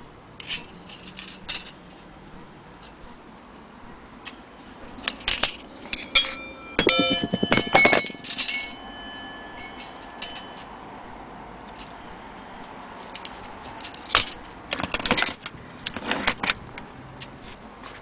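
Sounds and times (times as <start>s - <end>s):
clock movement clicks and clinks: 5.0s - 10.8s.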